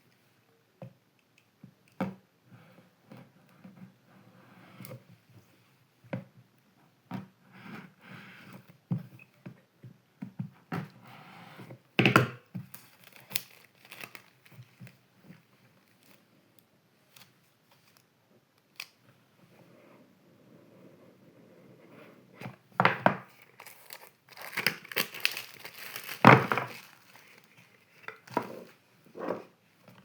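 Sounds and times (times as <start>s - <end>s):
wrapping crinkling and tearing: 12.7s - 15.0s, 23.3s - 28.4s.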